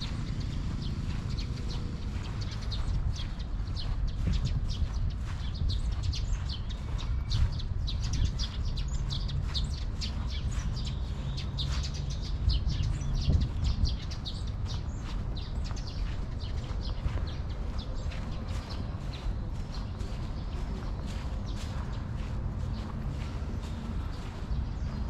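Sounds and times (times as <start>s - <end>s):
low steady rumble: 0.0s - 9.0s
small birds chirping: 0.0s - 25.0s.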